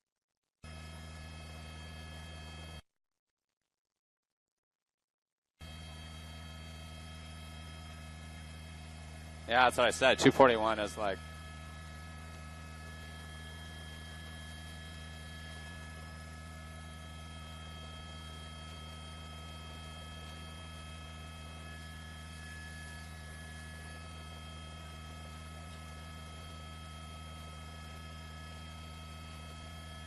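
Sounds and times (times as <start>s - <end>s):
steady low hum: 5.7s - 30.0s
constant high-pitched tones: 9.5s - 17.0s.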